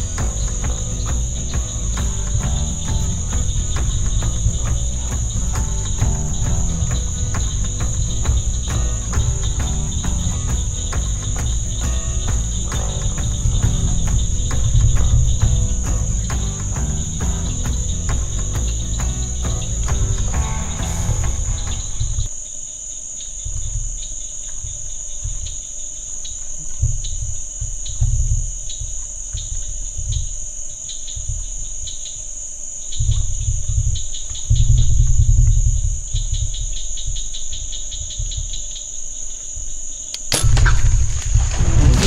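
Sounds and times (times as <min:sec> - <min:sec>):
low rumbles: 0:00.0 - 0:22.3, 0:40.2 - 0:42.0
music: 0:00.0 - 0:22.3, 0:40.4 - 0:42.0
crickets and katydids buzzing: 0:00.0 - 0:42.0.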